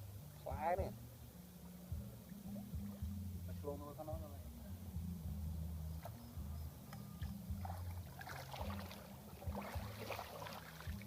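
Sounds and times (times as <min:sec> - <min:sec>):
water splashing and trickling: 0:00.0 - 0:04.9, 0:05.5 - 0:11.0.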